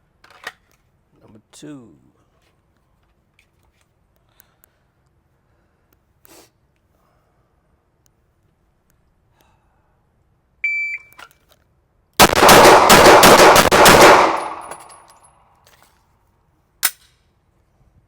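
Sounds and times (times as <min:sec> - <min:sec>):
shot timer beep: 0:10.6 - 0:11.2
rapid pistol shots echoing: 0:12.2 - 0:14.8.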